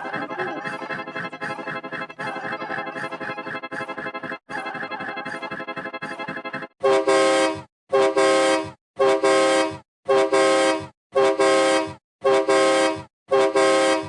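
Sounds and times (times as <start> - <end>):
car horn honking: 6.8 - 14.0.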